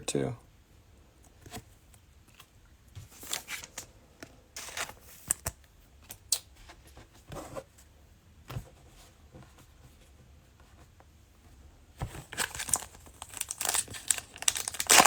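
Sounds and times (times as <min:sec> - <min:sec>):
plastic wrap rustling: 0:12.1 - 0:15.0.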